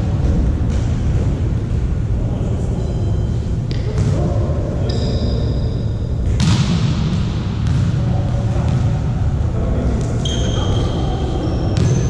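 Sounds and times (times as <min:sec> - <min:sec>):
volleyball being hit: 0:06.2 - 0:09.0
sneakers squeaking on court: 0:10.2 - 0:12.0.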